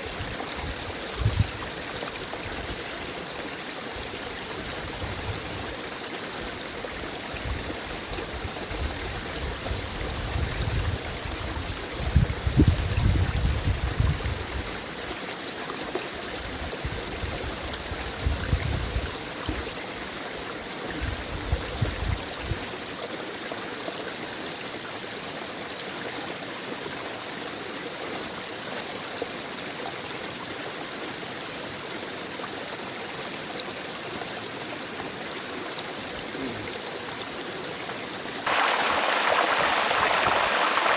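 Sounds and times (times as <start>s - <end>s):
stream splashing over falls: 35.8s - 40.9s.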